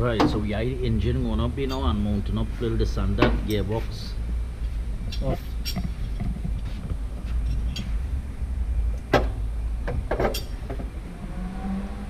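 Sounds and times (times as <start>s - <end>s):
metallic clinks and knocks of tools: 5.1s - 6.5s.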